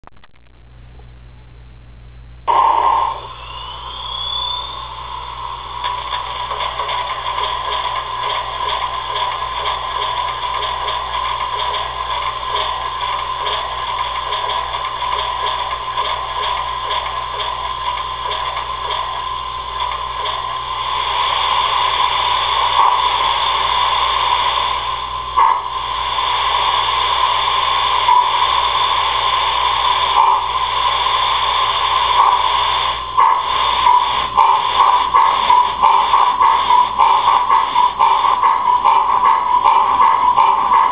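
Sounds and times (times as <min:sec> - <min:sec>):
model train whistle blast: 0:02.5 - 0:05.0
steam hissing and chuffing: 0:02.5 - 0:40.9.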